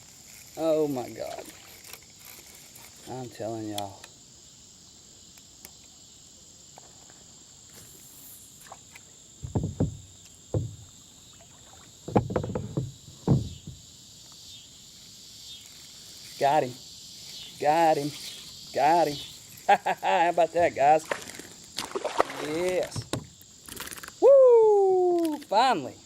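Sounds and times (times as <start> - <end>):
insect chorus: 0.0 - 26.0
thumps and knocks against kayak: 9.4 - 13.9, 20.6 - 23.4.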